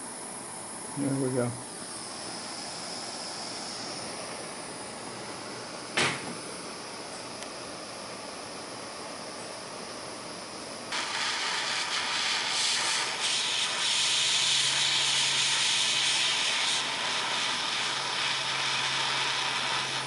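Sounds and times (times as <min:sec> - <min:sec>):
loud steady hiss: 0:10.9 - 0:20.0.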